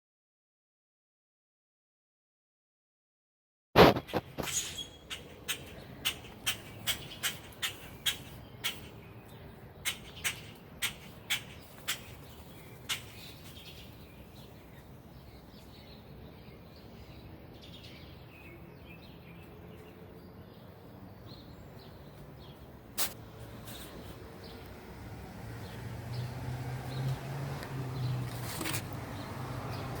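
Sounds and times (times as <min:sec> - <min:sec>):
sharp bird calls: 0:03.8 - 0:19.5
distant bird chirps: 0:03.8 - 0:22.7.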